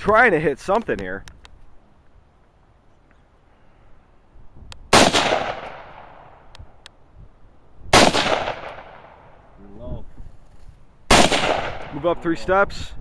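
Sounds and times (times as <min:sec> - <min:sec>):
rifle shot with echo: 0:04.9 - 0:06.4, 0:07.9 - 0:09.4, 0:11.1 - 0:12.2.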